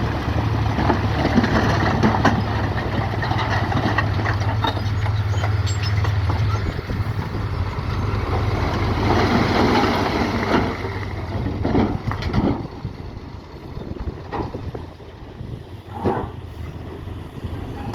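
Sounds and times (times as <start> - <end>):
diesel engine hum: 0.0 - 17.9
machinery scraping and rumbling: 0.0 - 17.9.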